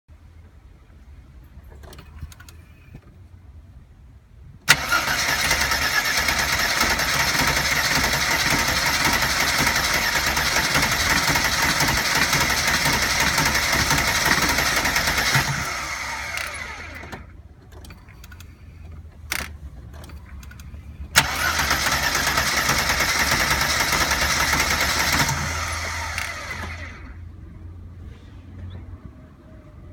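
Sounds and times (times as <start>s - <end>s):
starter motor cranking engine: 4.7s - 18.6s, 19.3s - 27.2s
ignition click: 19.3s - 23.1s.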